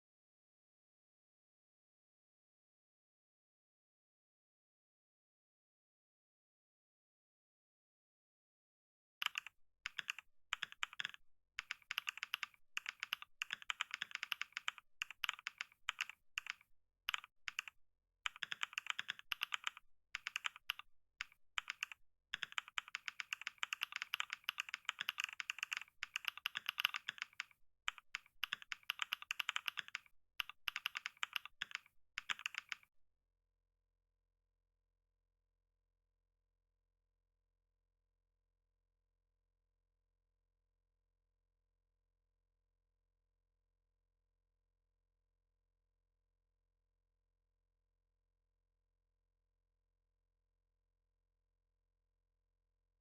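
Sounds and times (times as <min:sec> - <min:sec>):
fast typing on keyboard: 0:09.2 - 0:32.9.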